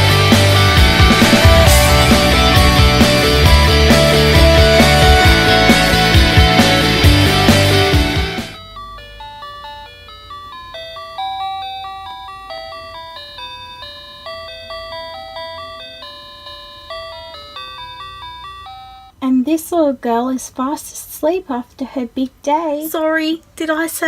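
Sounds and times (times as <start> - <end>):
electronic lullaby chimes: 8.6 - 19.2.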